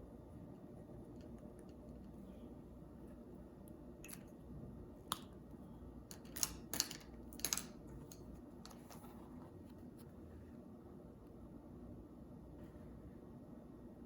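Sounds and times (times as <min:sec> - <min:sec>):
pen clicks: 0:06.1 - 0:09.1.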